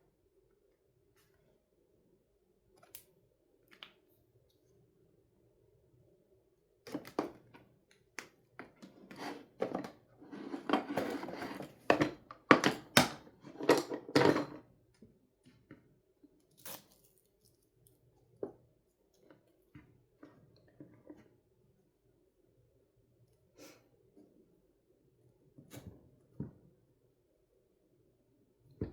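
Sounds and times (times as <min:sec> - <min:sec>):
scraping and rustling: 0:08.9 - 0:12.0.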